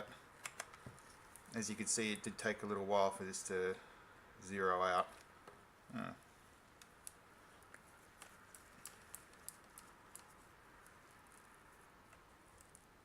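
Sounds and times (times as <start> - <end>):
plastic objects clicking: 6.8 - 11.4.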